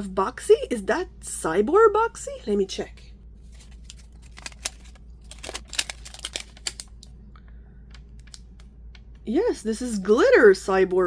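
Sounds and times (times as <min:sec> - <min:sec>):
plastic packaging crinkling: 0:03.5 - 0:07.0.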